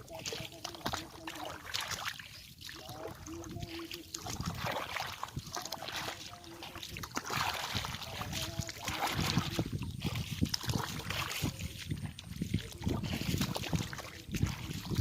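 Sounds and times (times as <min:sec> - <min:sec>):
water splashing: 0:00.0 - 0:15.0.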